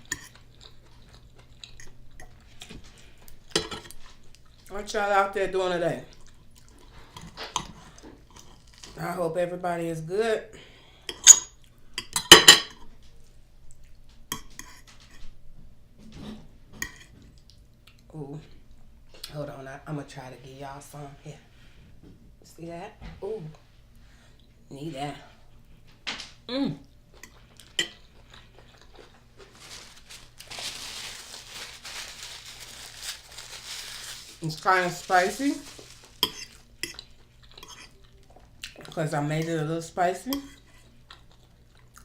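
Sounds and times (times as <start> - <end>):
wet chewing sounds: 0.0 - 4.7, 6.1 - 9.0, 26.8 - 34.7, 35.6 - 39.0, 40.6 - 42.0.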